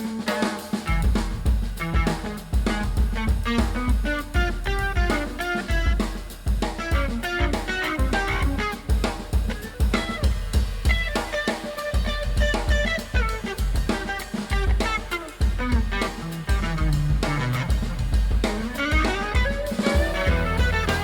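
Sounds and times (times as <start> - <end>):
bass: 0.0 - 11.4, 12.0 - 21.0
drum kit beat: 0.0 - 21.0
plucked guitar: 14.8 - 21.0.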